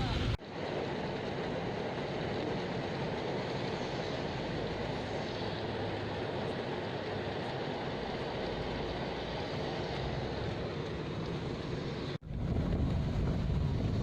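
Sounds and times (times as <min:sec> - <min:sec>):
moving vehicle rumbling: 0:08.0 - 0:14.0.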